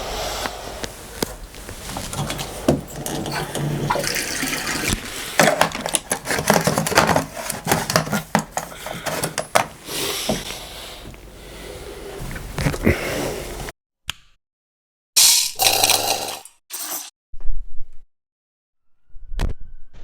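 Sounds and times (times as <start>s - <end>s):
hiss: 0.0s - 1.2s
water running: 1.2s - 11.4s
plumbing parts knocking: 1.8s - 10.5s.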